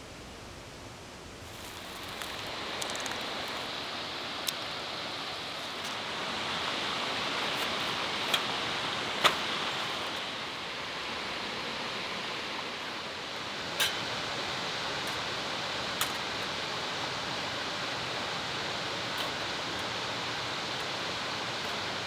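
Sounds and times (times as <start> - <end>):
mountain stream rushing: 1.4 - 22.0.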